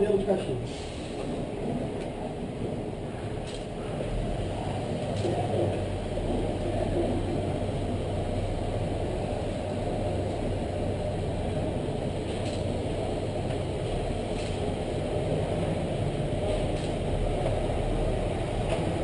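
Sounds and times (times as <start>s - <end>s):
machinery humming: 0.0s - 19.0s.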